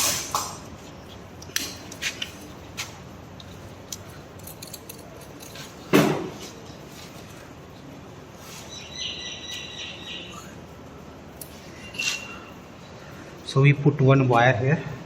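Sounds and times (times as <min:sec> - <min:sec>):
short high squeak: 0:11.8 - 0:12.5.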